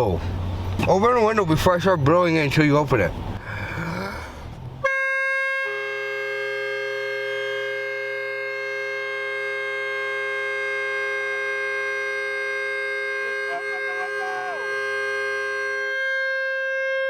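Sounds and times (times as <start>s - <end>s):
train horn long blast: 4.8s - 17.0s.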